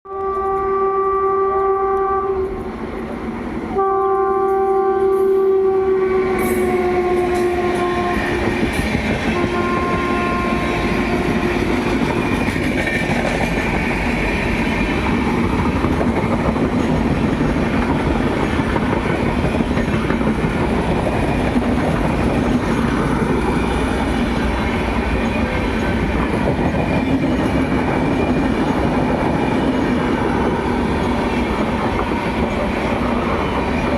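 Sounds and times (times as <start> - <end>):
train horn blasts: 0.1 - 2.7, 3.7 - 12.4
train wheels clickety-clack: 6.3 - 33.9.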